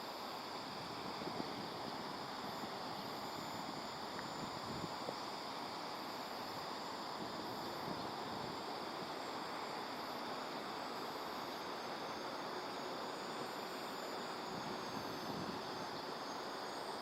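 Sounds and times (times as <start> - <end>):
distant electric motor glider whine: 0.0 - 17.0
steady outdoor hiss: 0.0 - 17.0.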